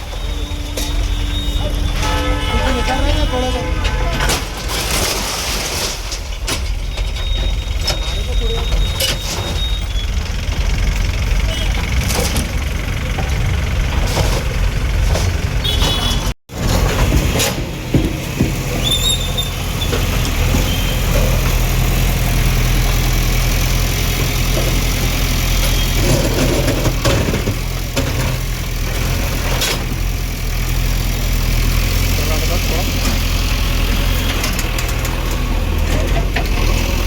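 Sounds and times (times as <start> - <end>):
high squeak: 0.0 - 3.4, 18.8 - 19.9
heavy engine running: 0.0 - 37.0.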